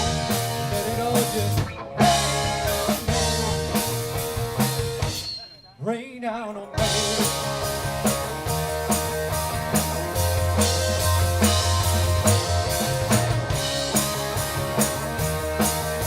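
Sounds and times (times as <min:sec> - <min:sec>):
bass guitar: 0:00.0 - 0:05.3, 0:06.7 - 0:16.0
electric guitar: 0:00.0 - 0:05.3, 0:06.6 - 0:16.0
drum kit beat: 0:00.0 - 0:05.5, 0:06.8 - 0:16.0.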